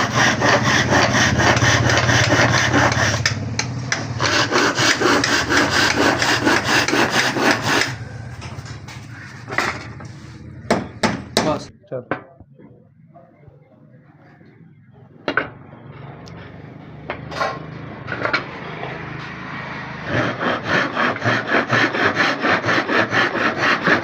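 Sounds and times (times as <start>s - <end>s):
saw rasping through wood: 0.0s - 11.7s, 19.6s - 24.0s.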